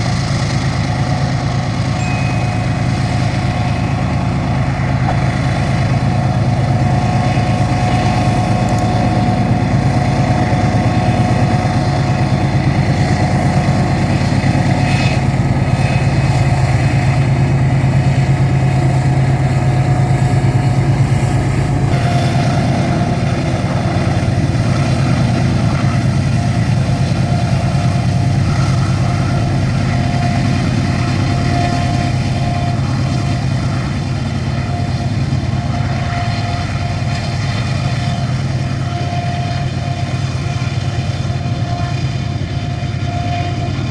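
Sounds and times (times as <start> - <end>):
diesel locomotive engine rumble: 0.0 - 43.9
held mid-pitched tone: 1.9 - 9.1.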